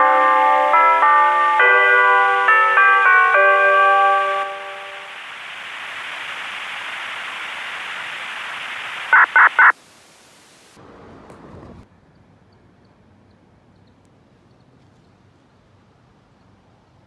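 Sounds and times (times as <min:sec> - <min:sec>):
radio chime notes: 0:00.0 - 0:09.8
radio channel hiss: 0:00.0 - 0:10.8
short loud beeps: 0:09.1 - 0:09.7.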